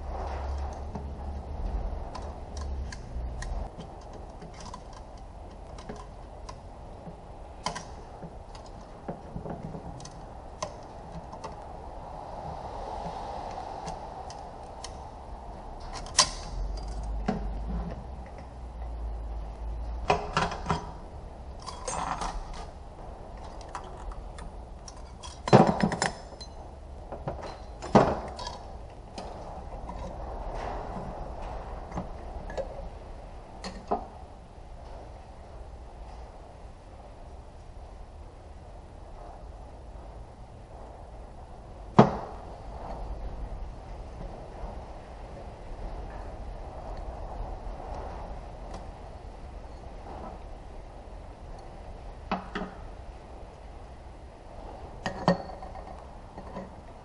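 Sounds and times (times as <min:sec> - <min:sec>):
steady background hum: 0:00.0 - 0:57.0
metal parts and tools clinking: 0:21.6 - 0:22.7.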